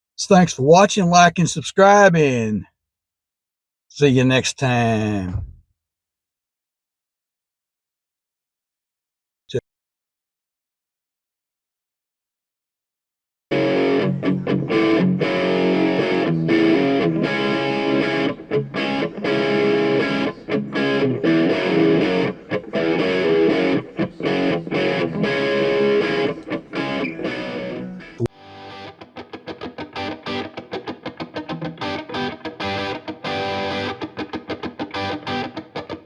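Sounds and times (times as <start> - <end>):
distorted electric guitar music: 13.5 - 36.0.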